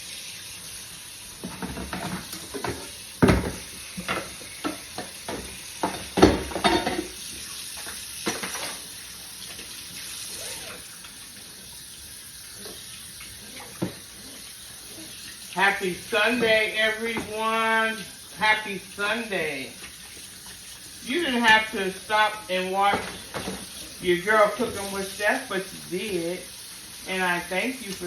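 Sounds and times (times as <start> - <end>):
pots and pans clanking: 1.4 - 7.2, 8.2 - 8.9, 22.9 - 23.8.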